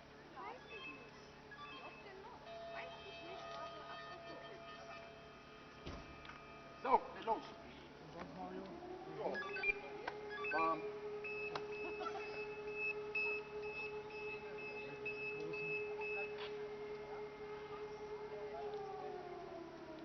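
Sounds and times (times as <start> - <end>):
pager alert beeps: 0.6 - 4.1, 9.4 - 16.5
electromechanical siren: 0.6 - 20.0.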